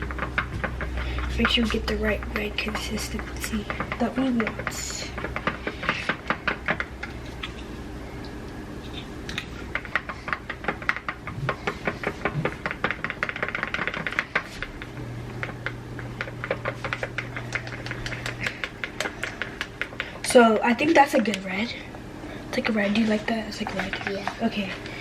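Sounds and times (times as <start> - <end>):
utensil clicking against bowl: 15.4 - 20.3.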